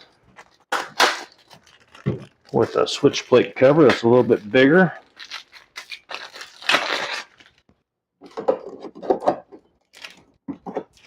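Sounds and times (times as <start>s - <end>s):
plastic cover rustling: 0.0s - 7.8s
plastic cover scraping and tapping: 0.3s - 4.8s, 8.2s - 11.0s.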